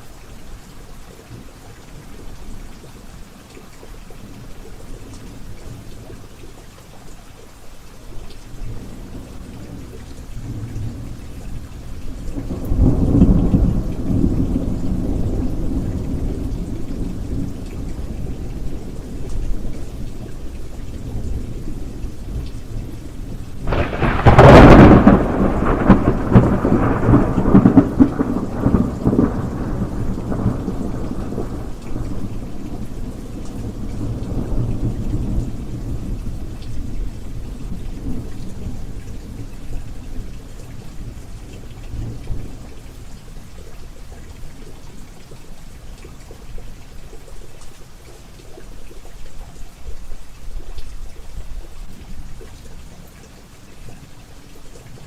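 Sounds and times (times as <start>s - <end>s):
steady rain: 0.0s - 55.0s
rolling thunder rumble: 12.3s - 19.0s, 21.1s - 40.3s
sharp thunderclap: 23.7s - 32.2s.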